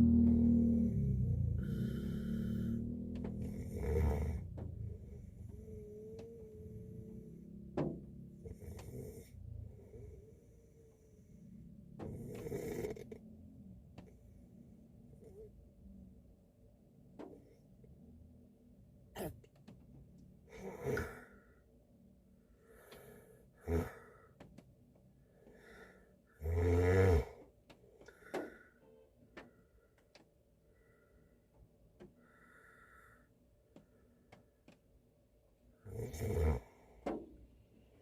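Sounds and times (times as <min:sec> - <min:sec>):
man snoring: 0:00.0 - 0:04.7, 0:05.3 - 0:07.4, 0:08.4 - 0:09.4, 0:12.1 - 0:13.2, 0:20.5 - 0:21.4, 0:23.5 - 0:24.2, 0:26.3 - 0:27.4, 0:35.8 - 0:36.8.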